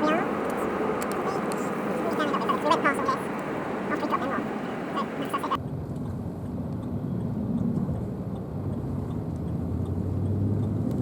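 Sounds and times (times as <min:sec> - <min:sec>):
faint hum: 0:00.0 - 0:05.6
vehicle engine rumbling: 0:00.0 - 0:11.0.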